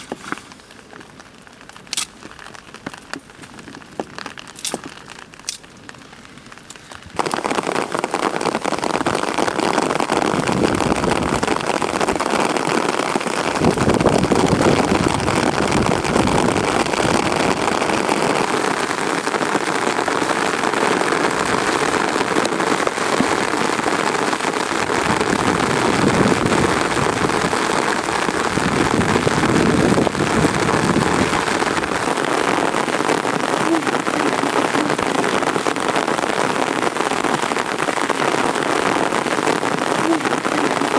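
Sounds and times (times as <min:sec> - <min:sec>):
heavy rain: 0:00.0 - 0:40.9.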